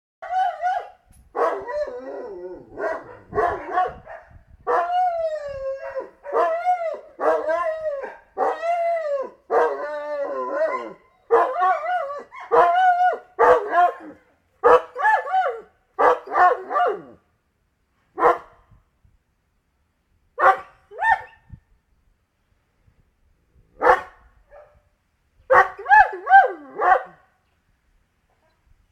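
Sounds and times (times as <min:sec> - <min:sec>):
dog barking and howling: 0:00.2 - 0:17.2, 0:20.4 - 0:21.4, 0:23.8 - 0:24.7, 0:25.5 - 0:27.2.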